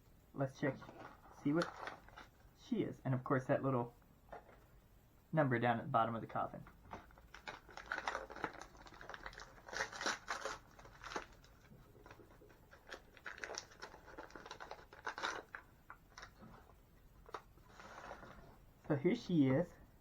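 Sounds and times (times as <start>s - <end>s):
packaging rustling and crinkling: 0.8s - 2.5s, 6.7s - 18.6s.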